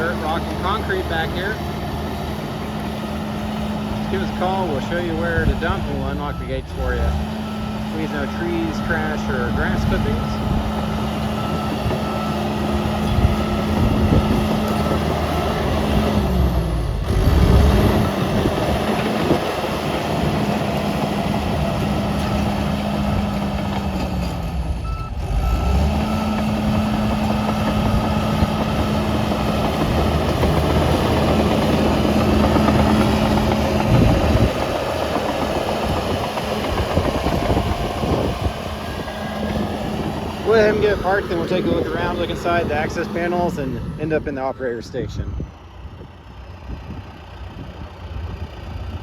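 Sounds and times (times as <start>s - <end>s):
bulldozer diesel engine: 0.0s - 49.0s
reverse alarm beeping: 4.3s - 15.0s.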